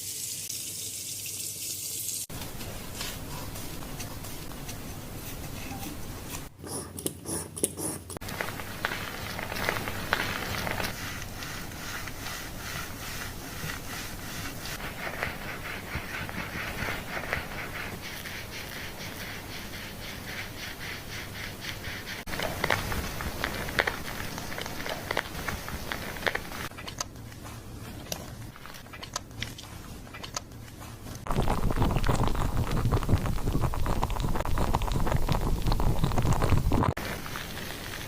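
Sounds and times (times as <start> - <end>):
fingers scratching through hair: 2.9 - 26.7.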